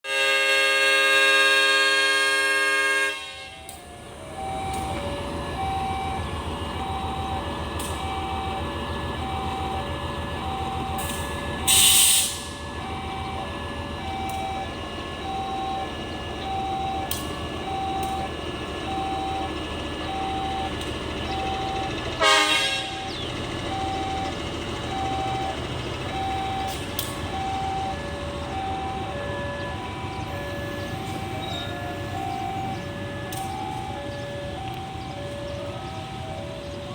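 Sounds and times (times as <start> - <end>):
train horn: 0.0 - 3.8, 22.2 - 23.1
train engine rumbling: 0.1 - 36.9
two-tone electronic signal: 4.4 - 36.9.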